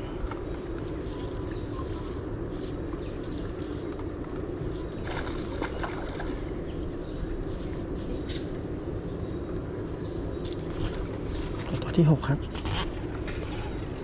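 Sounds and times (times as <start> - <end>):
low outdoor rumble: 0.0 - 14.0
crackly splashes or scrapes: 3.5 - 6.5.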